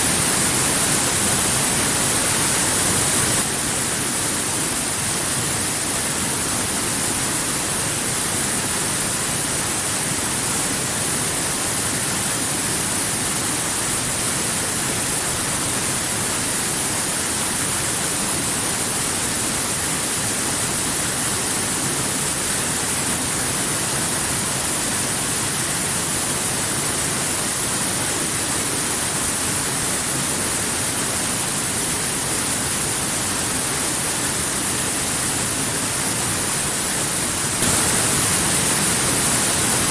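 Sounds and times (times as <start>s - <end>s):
waterfall rushing: 0.0s - 8.0s, 18.8s - 39.9s.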